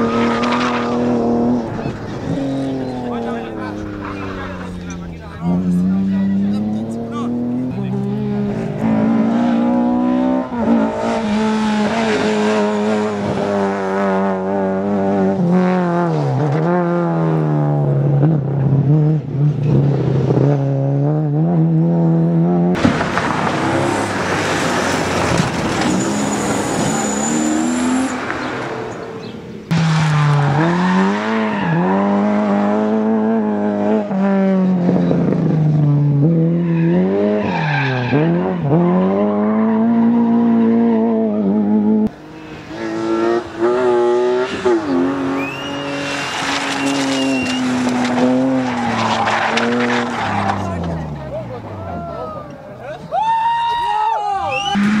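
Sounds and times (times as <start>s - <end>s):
rally car engines revving: 0.0s - 53.1s, 54.5s - 55.0s
tyres squealing: 25.7s - 28.5s, 45.3s - 51.2s.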